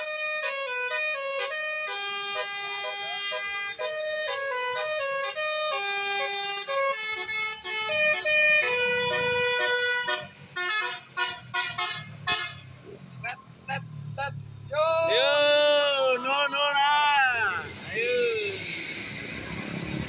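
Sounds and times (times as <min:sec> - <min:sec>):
musical air horn tune: 0:00.0 - 0:12.7
low engine rumble: 0:03.2 - 0:20.0.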